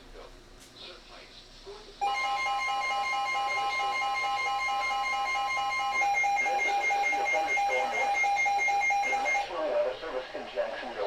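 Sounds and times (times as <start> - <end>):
rapidly pulsing beep: 2.0 - 9.5.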